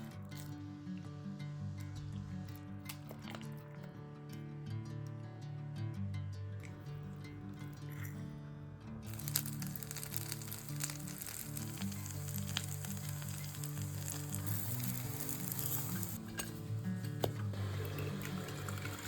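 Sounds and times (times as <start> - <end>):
background music: 0.0 - 19.0
batter sizzling in a frying pan: 9.1 - 16.2.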